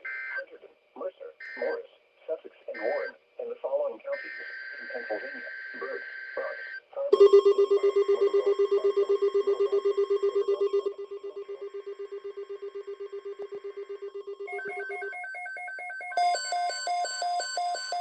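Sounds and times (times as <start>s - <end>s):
higher repeating beeps: 4.2s - 18.0s.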